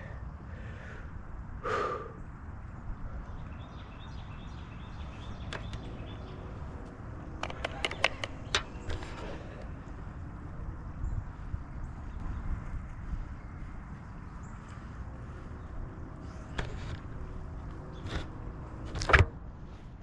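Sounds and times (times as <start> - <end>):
low wind noise: 0.0 - 20.0
sharp metallic clicks: 5.4 - 9.2.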